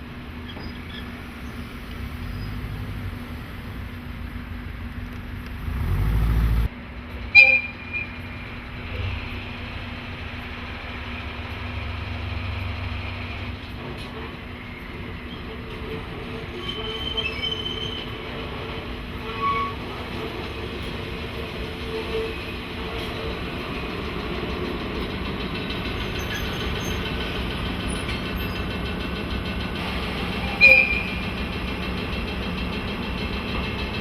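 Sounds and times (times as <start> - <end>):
diesel locomotive engine running: 0.0 - 16.9, 17.6 - 34.0
wheel squeals: 0.4 - 3.1, 14.7 - 21.0, 25.9 - 28.8, 30.3 - 31.4.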